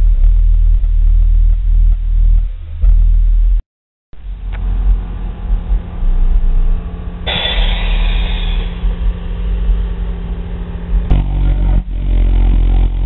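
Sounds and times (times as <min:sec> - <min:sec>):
deep bass pounding from subwoofers: 0:00.0 - 0:03.6, 0:04.2 - 0:13.0
hissy noise rush: 0:04.3 - 0:11.0.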